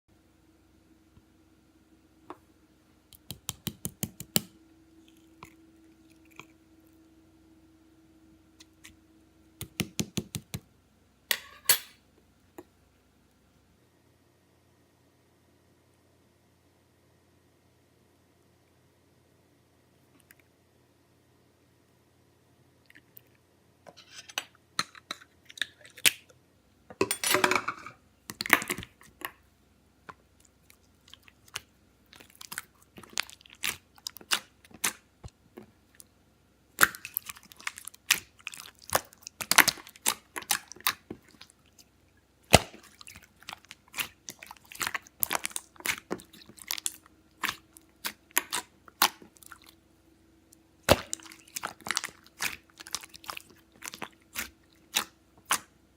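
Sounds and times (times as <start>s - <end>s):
close-up crunching and crackling: 30.0s - 49.8s, 50.4s - 55.8s.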